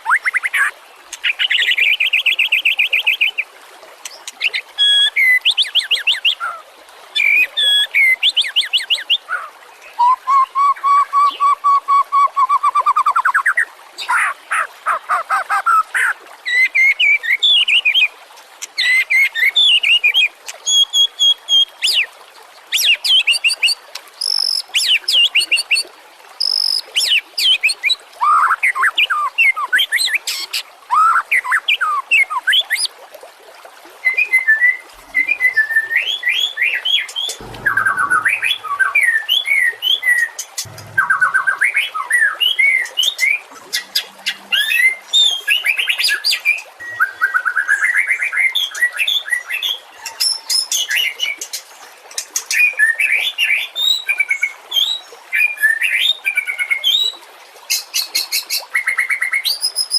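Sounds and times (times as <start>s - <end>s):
shama singing whistles and trills: 10.0s - 13.5s, 34.1s - 48.1s.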